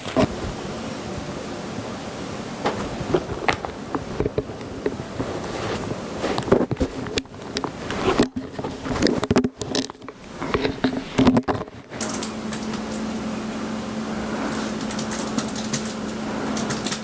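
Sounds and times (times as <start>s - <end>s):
steady low hum: 0.0s - 17.0s
close rustling and scratching: 2.7s - 13.2s, 14.1s - 17.0s.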